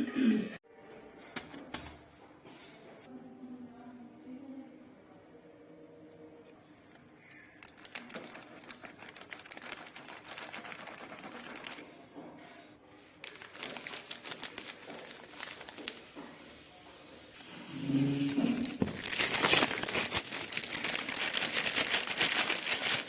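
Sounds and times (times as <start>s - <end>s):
packaging crinkling and clicking: 7.6s - 12.0s, 13.2s - 16.2s, 18.7s - 23.0s.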